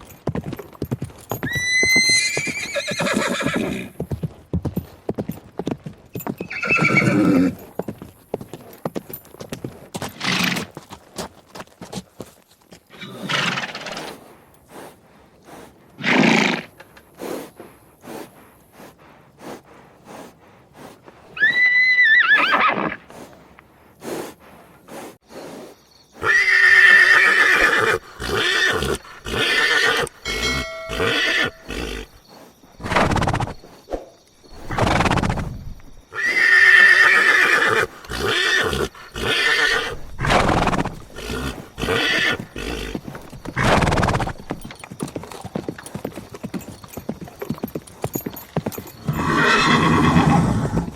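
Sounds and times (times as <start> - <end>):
hooves clopping: 0.0 - 25.6, 27.3 - 50.9
horse whinny: 1.3 - 4.0, 6.3 - 7.7, 12.9 - 14.2, 16.0 - 16.8, 21.4 - 23.0, 26.2 - 32.2, 36.1 - 44.6, 48.7 - 50.9
horse neighing loudly: 1.4 - 4.0, 6.5 - 7.6, 21.4 - 23.0, 26.2 - 32.1, 36.1 - 43.0, 49.0 - 50.9
horse snorting: 12.9 - 44.7, 47.8 - 50.9.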